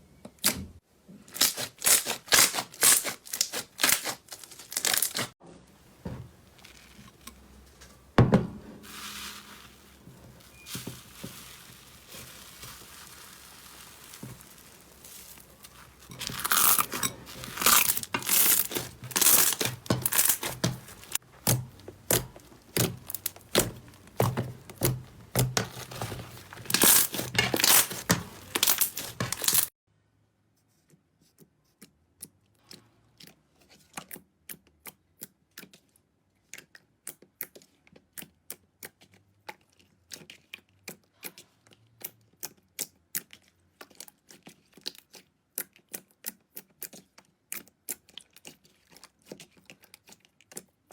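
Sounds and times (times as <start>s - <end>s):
slime crackling and popping: 1.3s - 5.3s, 8.8s - 29.7s
slime squished by hand: 8.8s - 29.7s.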